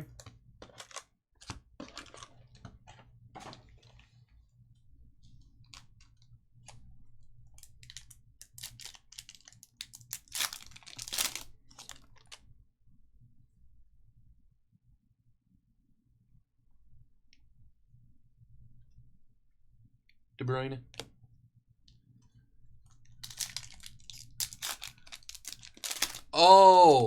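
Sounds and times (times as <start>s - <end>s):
foil wrappers crackling: 7.6s - 12.4s, 23.0s - 26.4s.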